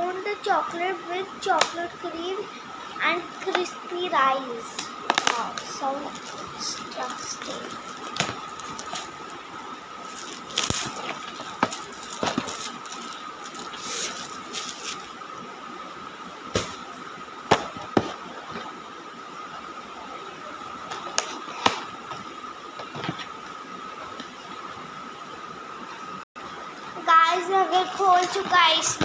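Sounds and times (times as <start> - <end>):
faint high hum: 0.0 - 29.0
plastic wrapper crinkling: 5.2 - 9.2, 10.0 - 15.1.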